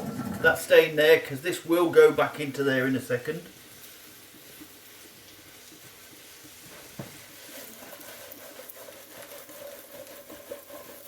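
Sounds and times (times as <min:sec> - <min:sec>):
food sizzling in hot oil: 0:00.0 - 0:11.0.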